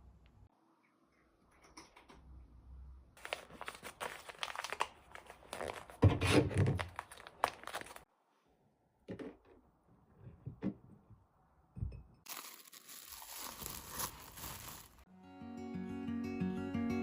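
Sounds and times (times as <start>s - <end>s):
packaging tearing and crinkling: 3.2s - 6.0s, 6.7s - 8.0s, 12.3s - 15.0s.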